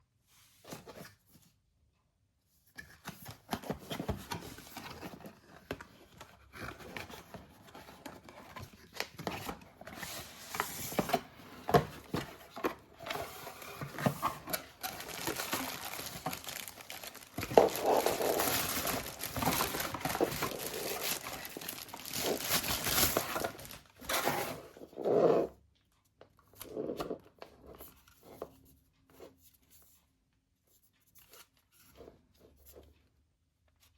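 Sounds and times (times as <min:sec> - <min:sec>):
plastic and paper crinkling: 0:03.5 - 0:24.7.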